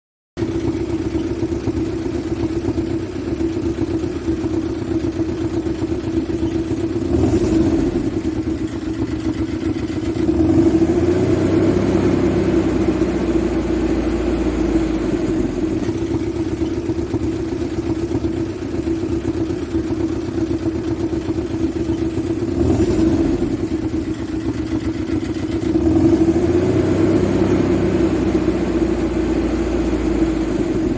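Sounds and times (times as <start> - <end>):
vehicle engine droning: 18.7 - 30.9.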